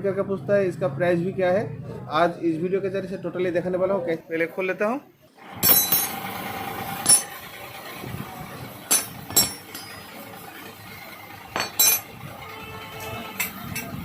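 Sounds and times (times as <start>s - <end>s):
metal tools clinking on metal: 5.6s - 6.3s, 7.0s - 7.4s, 8.9s - 10.3s, 11.5s - 12.2s.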